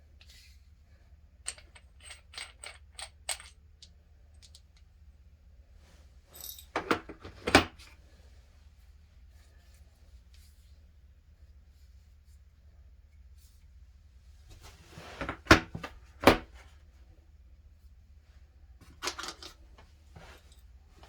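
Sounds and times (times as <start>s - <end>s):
clatter of metal parts: 1.4s - 3.6s, 18.8s - 19.6s.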